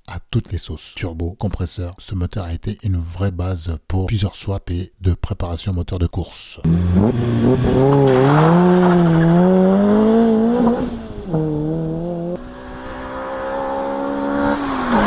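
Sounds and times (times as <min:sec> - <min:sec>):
car engine accelerating: 0:06.6 - 0:15.0.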